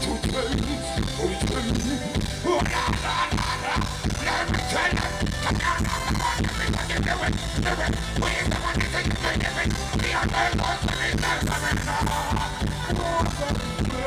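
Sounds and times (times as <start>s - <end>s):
heavy bass line: 0.0s - 14.0s
music with fast beat: 0.0s - 14.0s.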